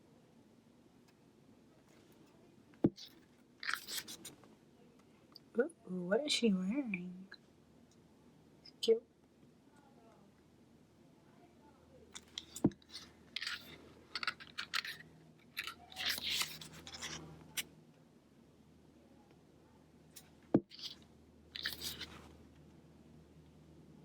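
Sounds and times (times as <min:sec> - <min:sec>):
paper pages rustling: 0:02.9 - 0:04.4, 0:12.2 - 0:15.0, 0:15.6 - 0:17.3, 0:21.6 - 0:22.3.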